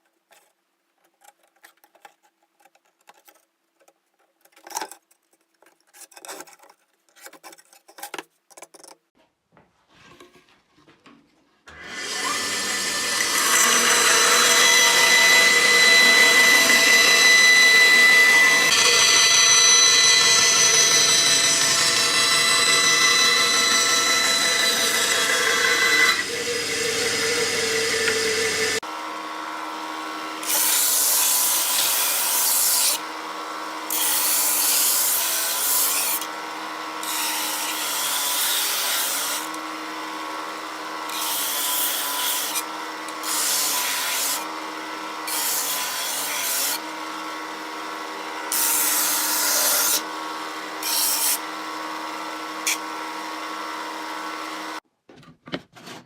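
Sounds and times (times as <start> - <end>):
sanding machine motor hum: 11.7 - 54.8.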